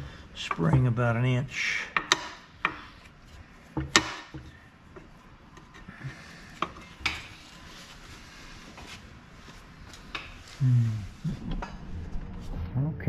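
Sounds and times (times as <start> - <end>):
hand tools knocking and clacking: 2.0 - 2.8, 3.8 - 4.6.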